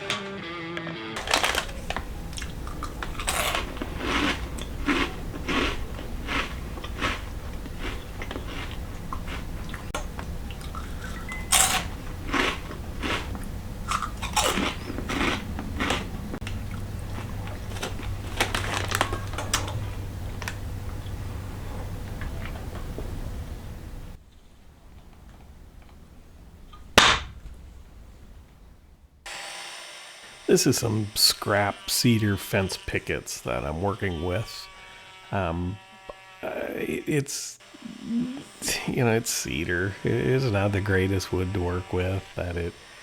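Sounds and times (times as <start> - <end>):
objects clicking and knocking: 1.2 - 3.9
steady low hum: 1.2 - 29.3.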